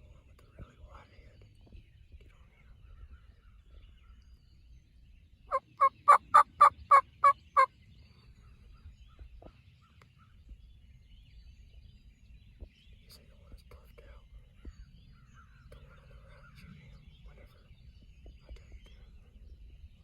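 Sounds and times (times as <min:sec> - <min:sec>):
turkey yelps: 0:05.5 - 0:07.7.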